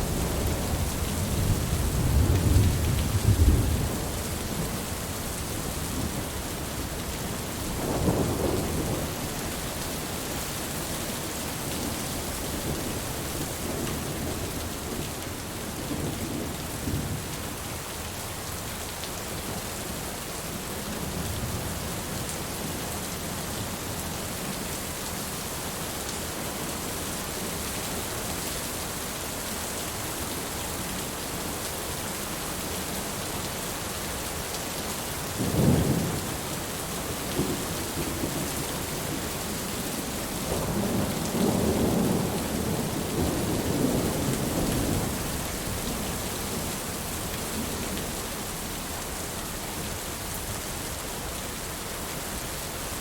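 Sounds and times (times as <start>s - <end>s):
thunder rumbling: 0.0s - 4.8s
steady rain: 0.0s - 53.0s.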